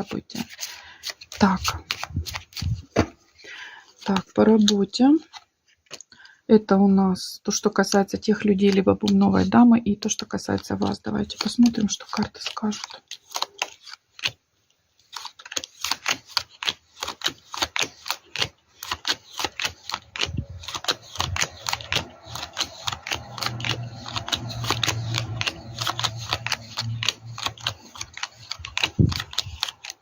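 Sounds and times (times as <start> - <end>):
playing cards being shuffled: 0.0 - 3.2, 10.2 - 14.4, 15.1 - 30.0.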